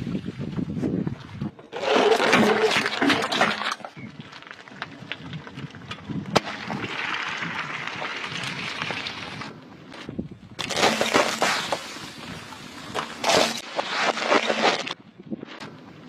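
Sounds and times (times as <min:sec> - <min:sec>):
tyre crushing brittle objects: 0:01.7 - 0:09.0, 0:10.6 - 0:12.3, 0:12.9 - 0:15.0
sharp crack: 0:06.3 - 0:07.4.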